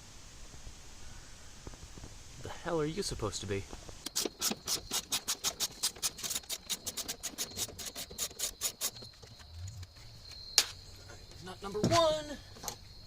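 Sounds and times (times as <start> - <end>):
ratchet clicking rapidly: 4.1 - 9.0.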